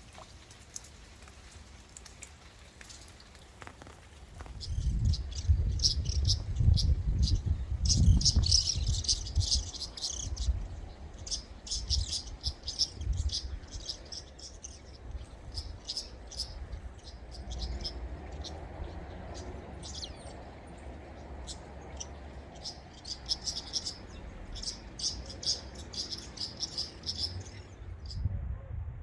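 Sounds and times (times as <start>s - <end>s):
low wind rumble on microphone: 4.3s - 29.0s
small animals chirping: 11.2s - 20.4s, 21.4s - 27.6s.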